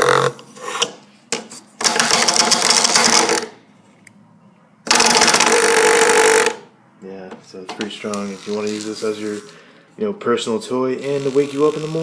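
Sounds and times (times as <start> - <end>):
bed-shaker rattling buzz: 4.9 - 6.6.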